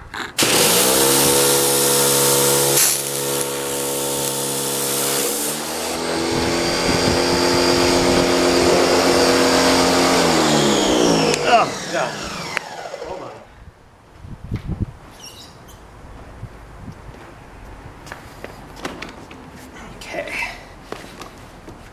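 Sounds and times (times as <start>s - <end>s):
water spray hissing: 0.4s - 6.0s
pressure washer motor drone: 0.4s - 13.5s.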